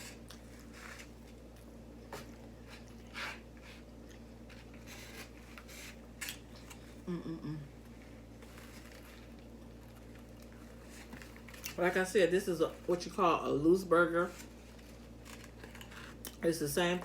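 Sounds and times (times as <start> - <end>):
person humming: 7.0 - 7.8.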